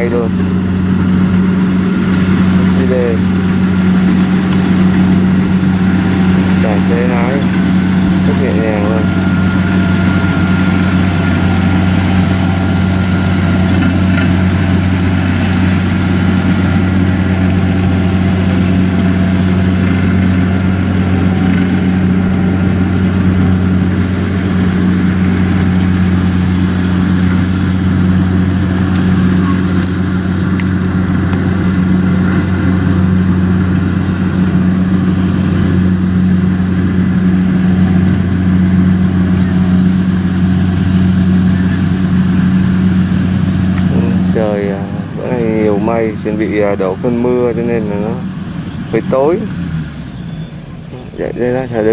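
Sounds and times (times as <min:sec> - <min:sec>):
combine harvester engine drone: 0:00.0 - 0:51.9.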